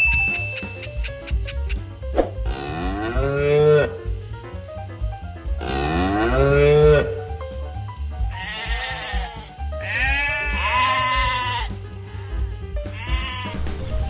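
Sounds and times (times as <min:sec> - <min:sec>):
background music: 0:00.0 - 0:14.0
cow mooing: 0:02.5 - 0:04.1, 0:05.6 - 0:07.2
sheep bleating: 0:05.6 - 0:07.2, 0:08.3 - 0:11.8, 0:12.9 - 0:13.6.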